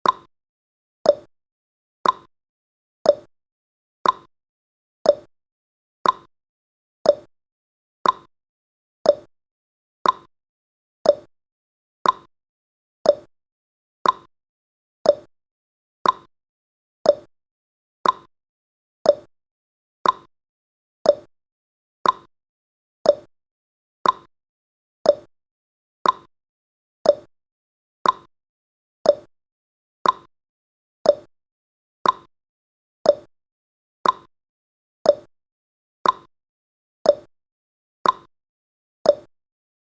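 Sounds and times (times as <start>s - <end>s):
countdown timer ticking: 7.1s - 7.3s, 9.1s - 9.3s, 11.1s - 11.3s, 13.1s - 13.3s, 15.1s - 15.3s, 17.1s - 17.3s, 19.1s - 19.3s, 21.1s - 21.3s, 23.1s - 23.3s, 24.0s - 24.3s, 25.1s - 25.3s, 26.0s - 26.3s, 27.0s - 27.3s, 28.0s - 28.3s, 29.1s - 29.3s, 30.0s - 30.3s, 31.1s - 31.3s, 32.0s - 32.3s, 33.1s - 33.3s, 34.0s - 34.3s, 35.1s - 35.3s, 36.0s - 36.3s, 37.1s - 37.3s, 38.0s - 38.3s, 39.1s - 39.3s.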